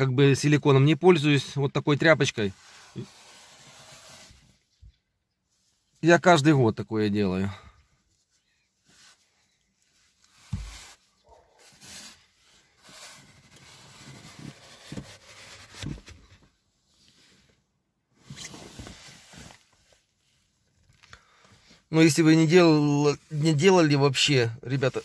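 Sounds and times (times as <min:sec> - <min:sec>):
cloth rag rubbing car window: 0:02.4 - 0:04.6, 0:10.3 - 0:16.0, 0:18.2 - 0:20.4.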